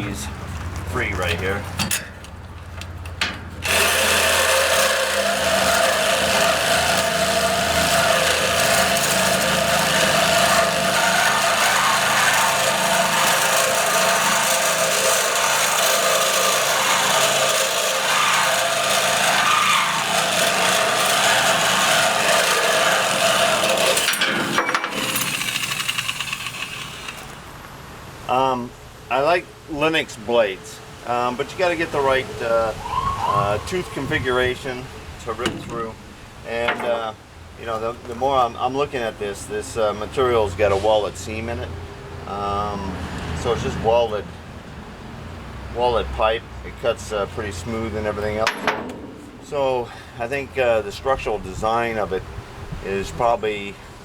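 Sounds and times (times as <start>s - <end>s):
power saw cutting steel pipe: 3.6s - 27.6s.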